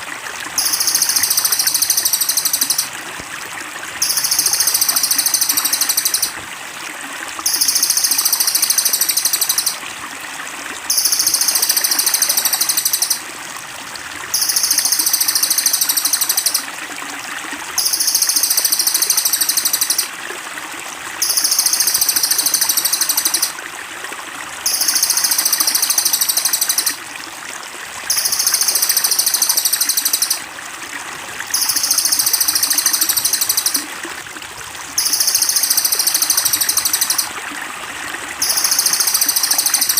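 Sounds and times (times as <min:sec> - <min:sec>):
trickling water: 0:00.0 - 0:39.9
high bird trill: 0:00.6 - 0:02.9, 0:04.0 - 0:06.3, 0:07.5 - 0:09.8, 0:10.9 - 0:13.2, 0:14.4 - 0:16.6, 0:17.8 - 0:20.1, 0:21.2 - 0:23.5, 0:24.7 - 0:27.0, 0:31.6 - 0:33.8, 0:35.0 - 0:37.3.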